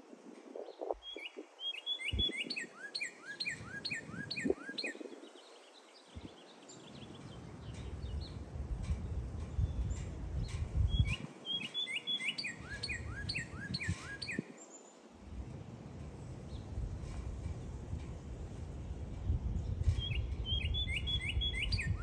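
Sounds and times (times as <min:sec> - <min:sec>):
wind buffeting microphone: 0:00.0 - 0:02.7, 0:03.4 - 0:14.6, 0:15.2 - 0:22.0
bird chirps: 0:00.6 - 0:08.4, 0:10.9 - 0:14.8, 0:19.9 - 0:22.0
songbird whistling: 0:01.0 - 0:05.0, 0:10.9 - 0:14.5, 0:20.0 - 0:22.0.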